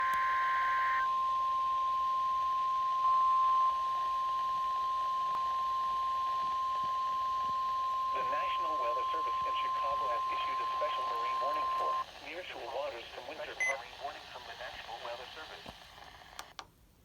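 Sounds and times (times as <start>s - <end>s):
higher tone: 0.0s - 12.1s
steady loud alarm beep: 6.4s - 12.0s.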